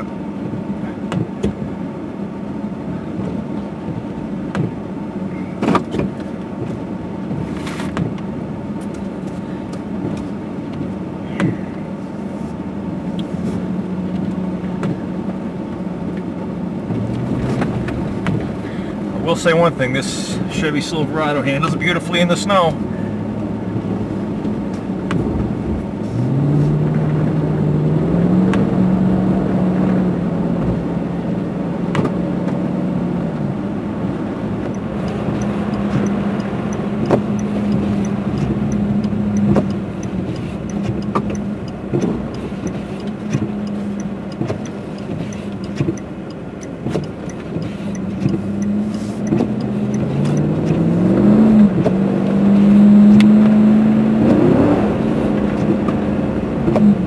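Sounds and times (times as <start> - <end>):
truck engine accelerating: 2.6 - 57.0
faint ticking: 34.6 - 50.5.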